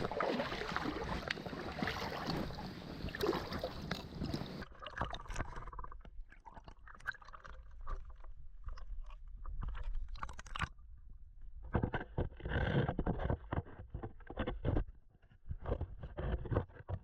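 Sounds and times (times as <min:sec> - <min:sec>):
sloshing water: 0:00.0 - 0:10.7
small splashes knocks and scrapes: 0:00.0 - 0:10.9.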